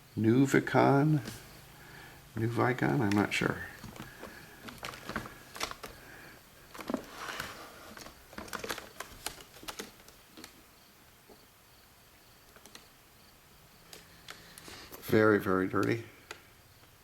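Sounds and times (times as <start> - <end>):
handling clicks and knocks on plastic: 3.0 - 6.0, 6.7 - 10.6.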